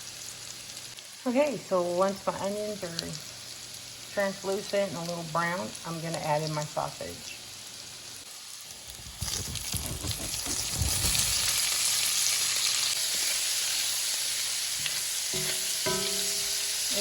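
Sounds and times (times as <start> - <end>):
frying sizzle: 0.0 - 17.0
sausage thumping in skillet: 14.7 - 17.0.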